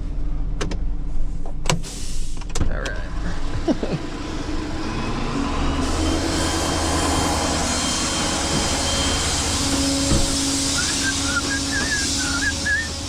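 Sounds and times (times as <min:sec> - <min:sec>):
vehicle engine droning: 0:02.7 - 0:13.0
warbling horn tune: 0:06.5 - 0:13.0.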